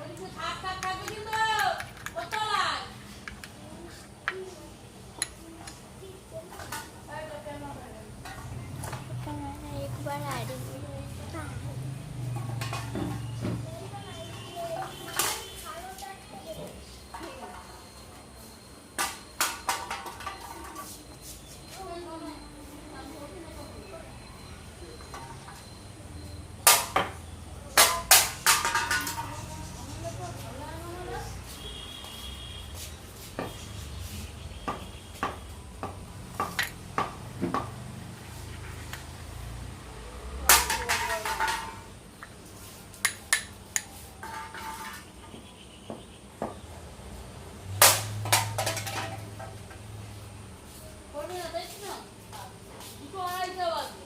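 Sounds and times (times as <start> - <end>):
small hard objects clattering: 27.8 - 29.6, 40.5 - 42.0, 47.8 - 49.4.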